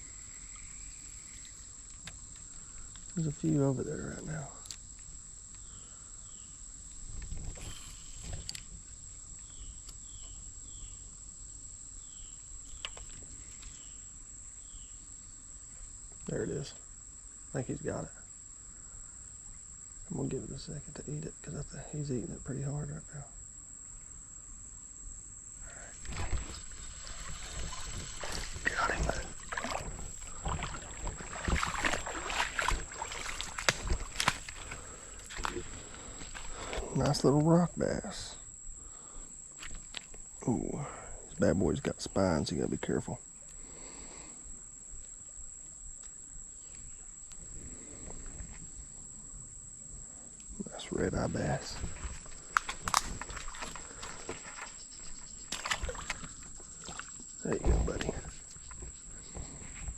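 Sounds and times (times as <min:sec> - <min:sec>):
insects droning: 0:00.0 - 0:59.9
fish splashing in water: 0:25.9 - 0:36.8, 0:51.8 - 0:58.4.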